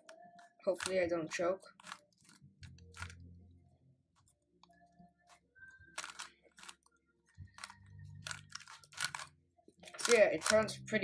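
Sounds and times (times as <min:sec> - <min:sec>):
puzzle cube plastic clicks: 0:00.4 - 0:01.0, 0:01.8 - 0:03.2, 0:05.9 - 0:06.9, 0:07.6 - 0:09.3, 0:09.9 - 0:10.8.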